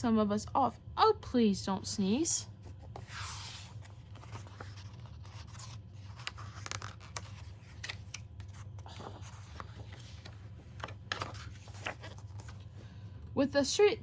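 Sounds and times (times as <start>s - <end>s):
steady low hum: 0.0s - 14.0s
paper pages rustling: 2.6s - 12.8s.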